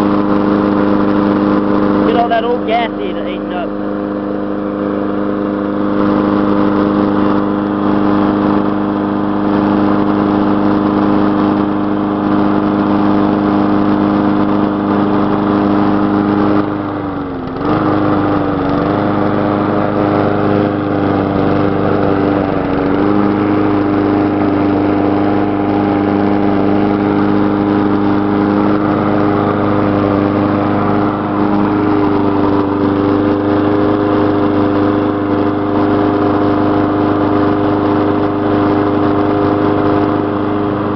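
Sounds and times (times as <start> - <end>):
lawn mower engine running: 0.0 - 40.9.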